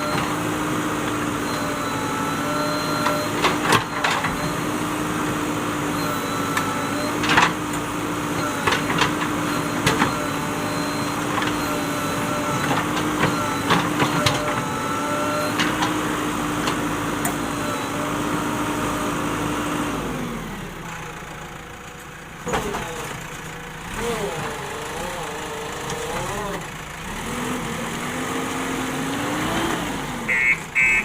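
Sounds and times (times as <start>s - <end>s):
backhoe diesel engine running: 0.0s - 31.0s.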